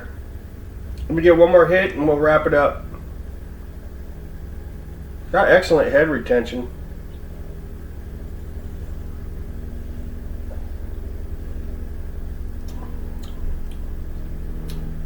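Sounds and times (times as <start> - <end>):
low background rumble and hum: 0.0 - 15.0
faint clicks: 12.6 - 13.9.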